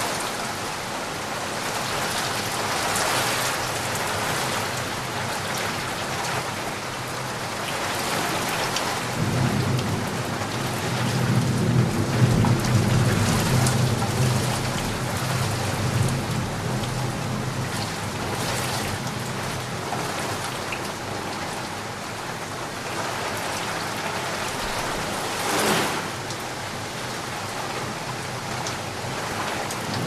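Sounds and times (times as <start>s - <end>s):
heavy rain falling: 0.0s - 30.0s
low rumble of thunder: 9.0s - 20.1s.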